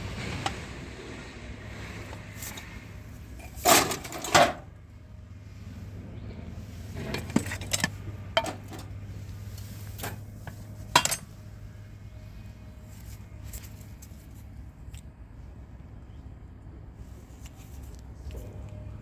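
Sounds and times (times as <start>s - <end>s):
metal objects clinking: 3.4s - 4.6s, 7.0s - 8.9s, 9.9s - 11.3s.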